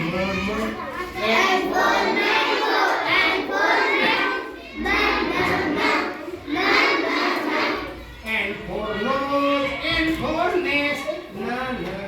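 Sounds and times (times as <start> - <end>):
children chanting in unison: 0.5 - 8.2.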